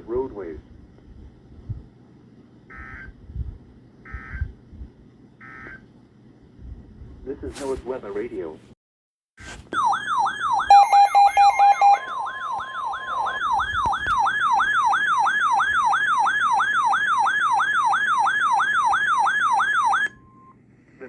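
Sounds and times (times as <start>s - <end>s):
electronic siren warning alarm: 2.7s - 3.2s, 4.1s - 4.5s, 5.4s - 5.9s, 9.7s - 20.6s
quick electronic beeps: 9.8s - 13.8s
steady alert tone: 9.8s - 14.4s.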